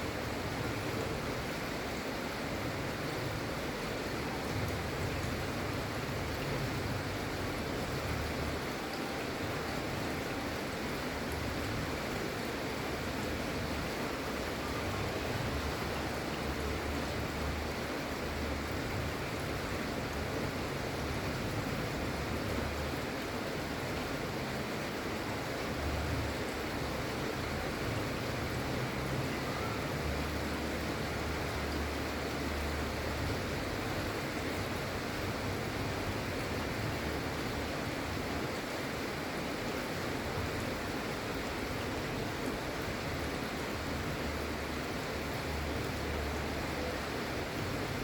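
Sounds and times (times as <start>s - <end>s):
gentle rain: 0.0s - 48.0s.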